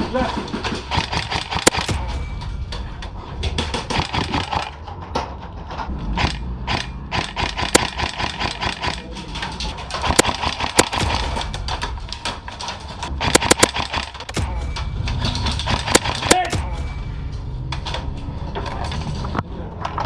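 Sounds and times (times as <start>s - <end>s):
airsoft guns firing: 0.2s - 2.2s, 3.8s - 4.7s, 6.2s - 9.1s, 9.9s - 12.5s, 13.1s - 14.7s, 15.6s - 16.7s
bbs striking: 10.0s - 17.0s.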